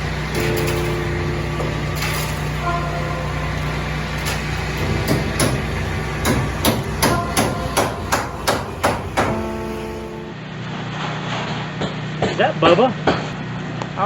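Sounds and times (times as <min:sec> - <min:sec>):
low engine-like hum: 0:00.0 - 0:10.8
hammer blows on hard surface: 0:00.3 - 0:10.3.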